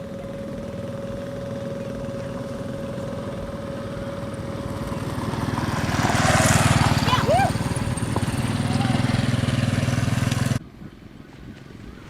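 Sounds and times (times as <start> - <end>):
small motorcycle engine running: 0.0 - 10.6.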